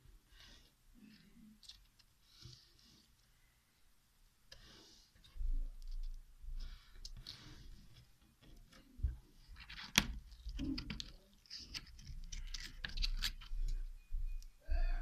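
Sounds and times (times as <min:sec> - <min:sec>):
slime squishing: 0:09.4 - 0:13.8.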